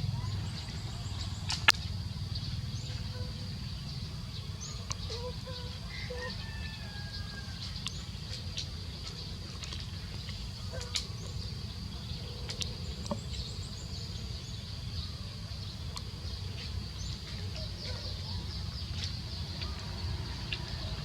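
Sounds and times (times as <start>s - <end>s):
low rumble: 0.0s - 6.1s
bird chirps: 0.0s - 21.0s
high insect drone: 0.0s - 21.0s.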